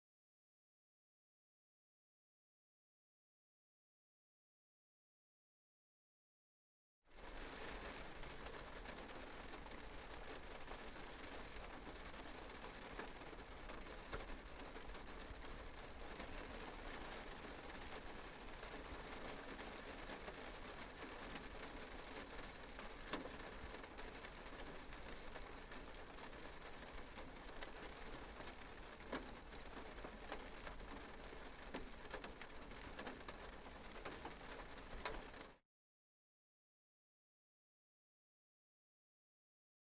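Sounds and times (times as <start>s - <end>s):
light rain on metal: 7.1s - 35.6s.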